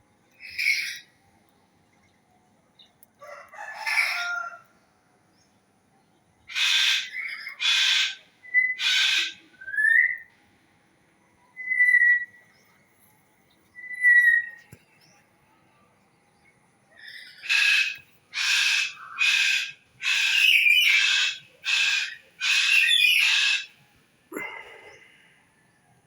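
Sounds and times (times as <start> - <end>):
bird harsh calls: 0.4 - 1.1, 6.5 - 10.3, 17.0 - 25.3.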